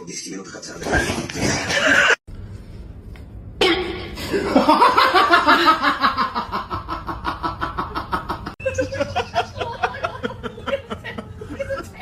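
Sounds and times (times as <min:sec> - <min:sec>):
person laughing: 0:04.3 - 0:12.0.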